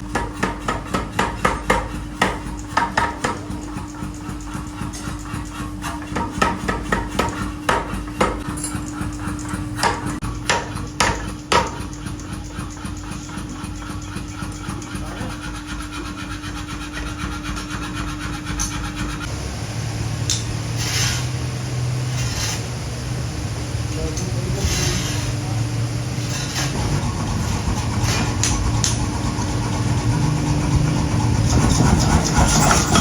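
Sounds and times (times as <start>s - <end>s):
deep motor drone: 19.1s - 33.0s
machine hum: 19.2s - 33.0s.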